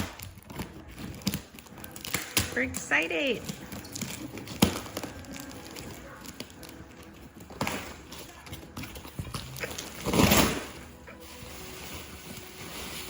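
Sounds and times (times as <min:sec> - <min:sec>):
packaging knocks and rustles: 0:00.0 - 0:02.8, 0:03.4 - 0:13.0
loud rustle or scrape: 0:09.6 - 0:13.0.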